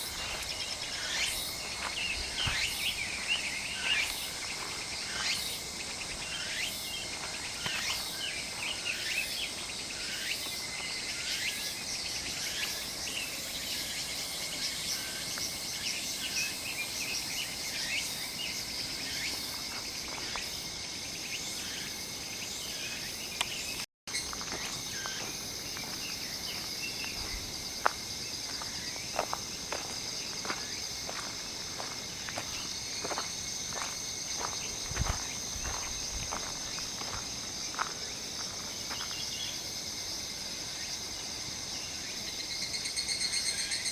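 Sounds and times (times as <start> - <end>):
short falling insect calls: 0.0 - 12.9, 22.7 - 39.7
insects chirping chorus: 0.0 - 43.9.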